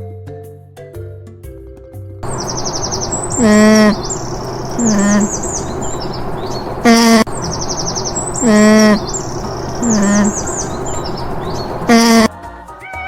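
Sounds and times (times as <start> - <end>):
birds chirping: 2.2 - 12.3
animal calling: 2.2 - 13.0.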